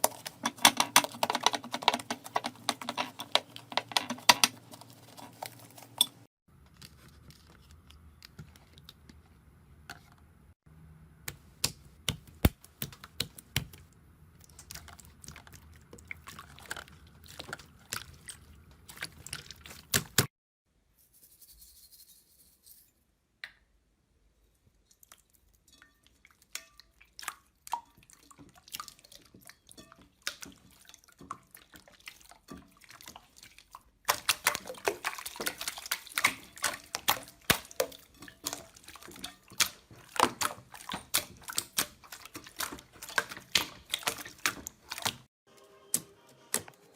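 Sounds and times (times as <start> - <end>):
slime squelching and popping: 34.0 - 45.3.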